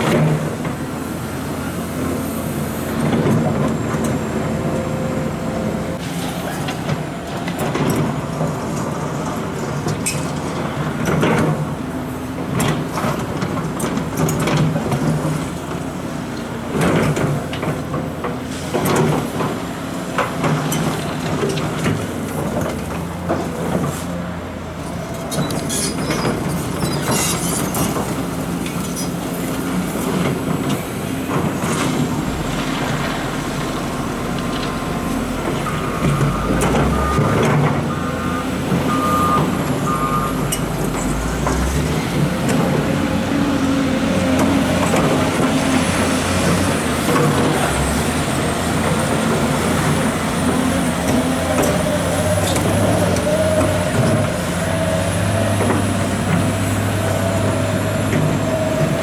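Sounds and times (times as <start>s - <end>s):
excavator diesel engine: 0.0s - 59.0s
truck engine idling: 31.1s - 59.0s
beeps: 35.6s - 40.8s.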